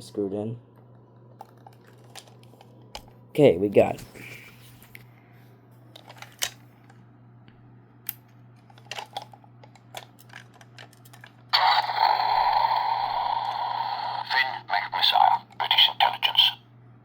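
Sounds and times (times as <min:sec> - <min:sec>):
toy electronic sound effect: 0:11.6 - 0:16.6.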